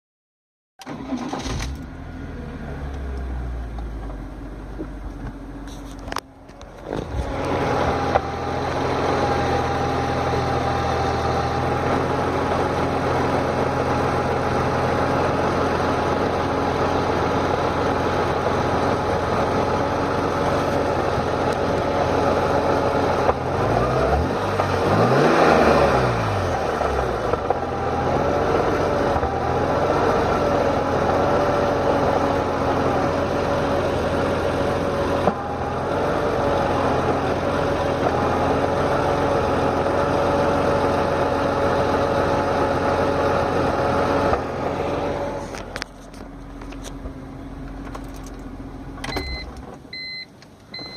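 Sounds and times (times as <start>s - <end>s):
car engine idling: 0.9s - 23.8s, 24.4s - 50.9s
engine revving: 6.8s - 45.8s.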